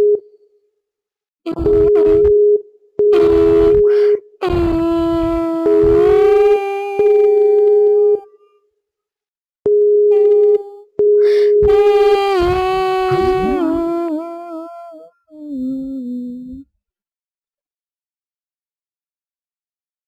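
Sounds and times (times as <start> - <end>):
harsh buzzing tone: 1.5 - 8.3, 10.1 - 14.9.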